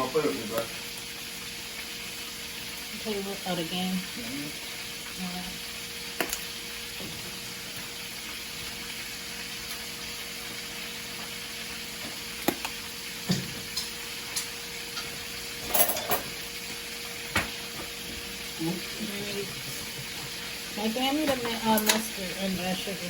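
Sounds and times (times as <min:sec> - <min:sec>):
food sizzling in a pan: 0:00.0 - 0:23.0
utensils and dishes clinking: 0:13.2 - 0:16.5, 0:21.0 - 0:22.4.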